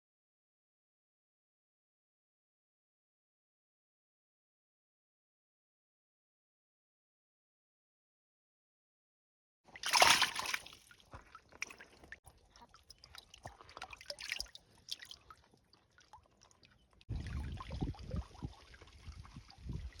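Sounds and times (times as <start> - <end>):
water drips and trickles: 9.7 - 20.0
water splash: 9.8 - 10.9.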